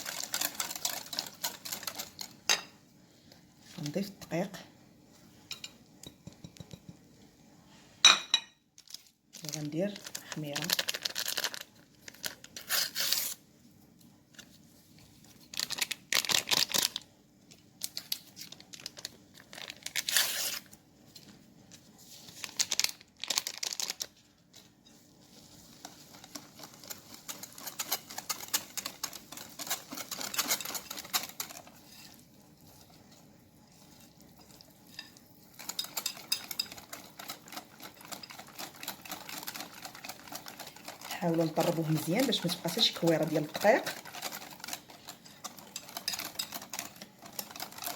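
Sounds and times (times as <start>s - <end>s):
batter beaten in a bowl: 0.0s - 2.9s, 5.5s - 7.1s, 23.3s - 47.9s
paper crinkling: 8.8s - 13.4s, 14.3s - 34.2s, 36.7s - 47.9s
paper sachets tearing: 8.8s - 13.4s, 15.5s - 17.1s, 17.8s - 20.8s, 22.3s - 24.4s.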